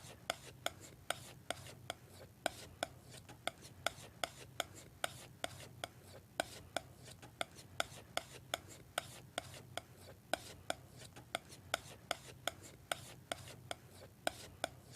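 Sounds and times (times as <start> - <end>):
palette knife scraping: 0.0 - 14.9
palette knife tapping paint: 0.2 - 14.9.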